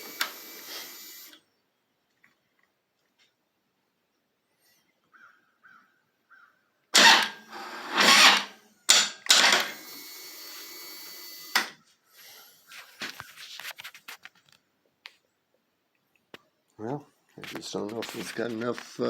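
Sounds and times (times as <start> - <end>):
starter motor cranking: 0.0 - 1.4, 7.0 - 11.8.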